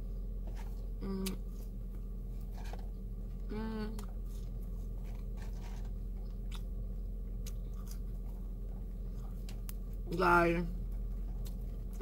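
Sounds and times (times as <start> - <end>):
steady low hum: 0.0 - 12.0
chewing and biting food: 4.0 - 10.0, 10.9 - 12.0.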